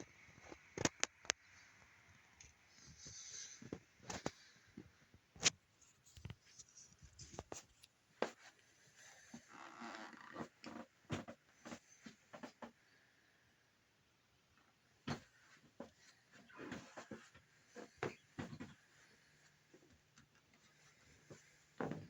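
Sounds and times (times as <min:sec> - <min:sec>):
faint hiss: 0:01.4 - 0:04.7.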